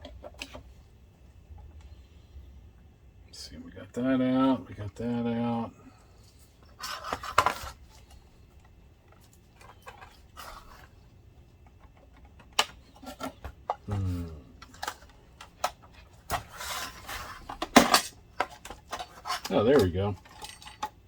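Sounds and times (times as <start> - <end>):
short low vocal sound: 13.8 - 14.6.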